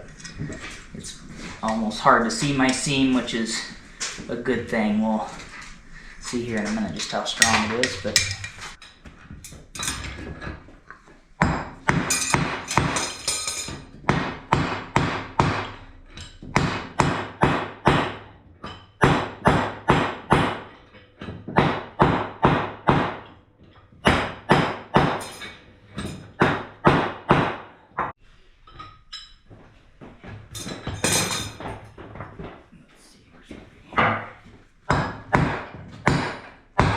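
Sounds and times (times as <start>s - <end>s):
hammer striking metal on anvil: 7.4s - 9.0s, 11.4s - 23.3s, 24.0s - 27.7s, 34.9s - 36.9s.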